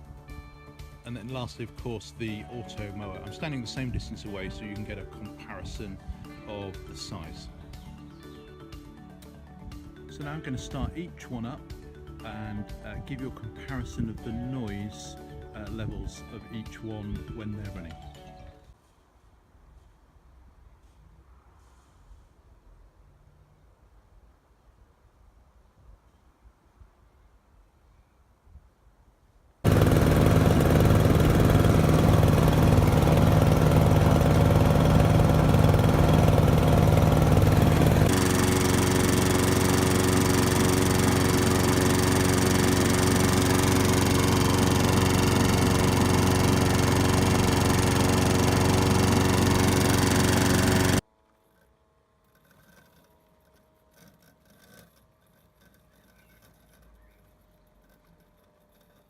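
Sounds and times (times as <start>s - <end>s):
ride-on mower engine pulsing: 0.0s - 8.4s, 29.6s - 59.0s
walk-behind petrol mower running: 1.1s - 7.5s, 29.6s - 59.0s
robot mower electric whir: 29.6s - 59.0s.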